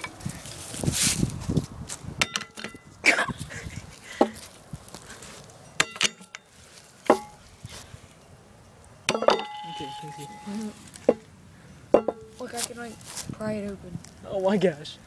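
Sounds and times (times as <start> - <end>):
heavy metal clangs: 2.2 - 2.8, 5.8 - 7.4, 9.1 - 11.3, 11.9 - 12.4.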